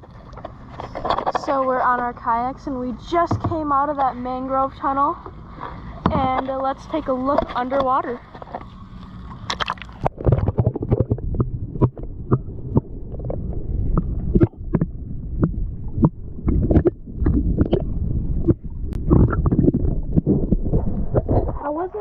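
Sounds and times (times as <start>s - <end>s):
muffled underwater slosh: 0.0s - 22.0s
sharp clicks and pops: 9.3s - 21.6s.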